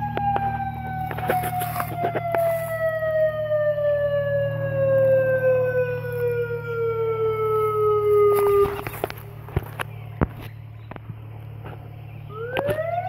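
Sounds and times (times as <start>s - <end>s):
electronic siren sliding down in pitch: 0.0s - 8.9s
low hum: 0.0s - 13.0s.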